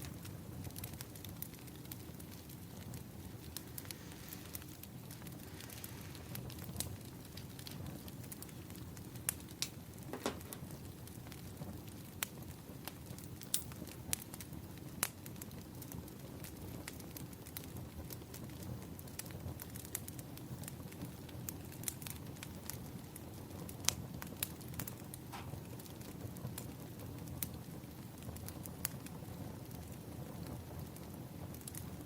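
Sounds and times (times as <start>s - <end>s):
wood fire crackling: 0.0s - 32.0s
logs popping: 9.2s - 10.9s.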